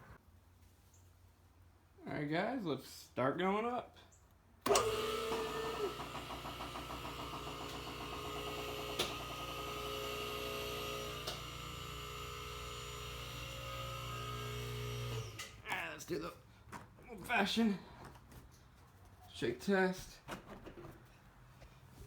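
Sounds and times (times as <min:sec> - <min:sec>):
hydraulic pump motor pulsing: 0:04.7 - 0:15.5.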